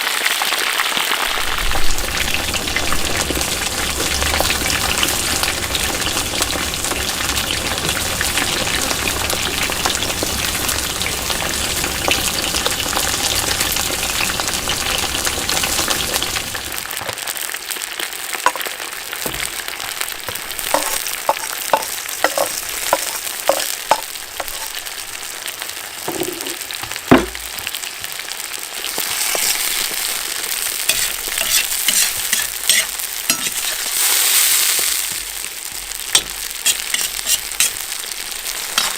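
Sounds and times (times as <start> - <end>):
food sizzling in oil: 0.0 - 38.9
stirring: 20.2 - 24.8, 28.9 - 34.0, 36.1 - 37.8, 38.5 - 38.9
loud knock: 27.1 - 27.4.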